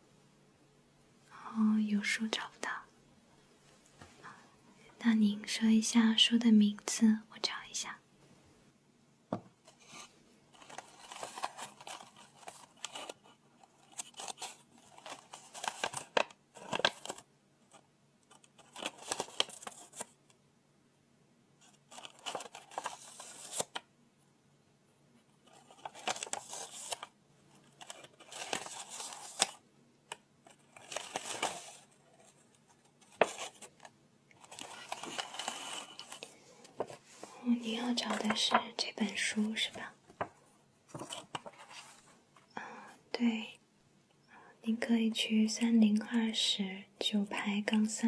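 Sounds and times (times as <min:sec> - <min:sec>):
paper rustling: 0:09.7 - 0:20.2, 0:21.6 - 0:23.8, 0:25.4 - 0:42.2.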